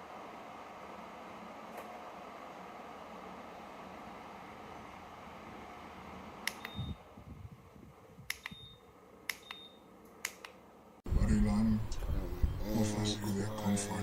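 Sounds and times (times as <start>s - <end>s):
tower fan whooshing: 0.0s - 8.4s.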